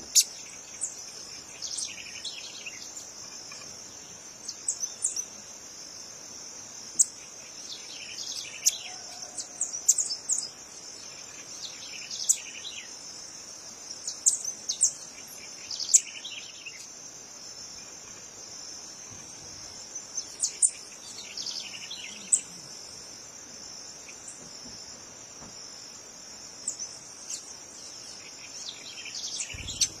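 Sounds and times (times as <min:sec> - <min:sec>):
insect trill: 0:00.0 - 0:30.0
birds chirping: 0:26.7 - 0:30.0.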